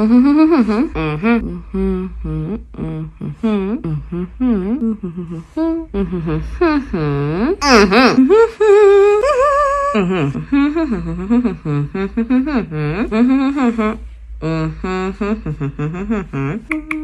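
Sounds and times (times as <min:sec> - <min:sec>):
woman humming: 0:00.0 - 0:17.0.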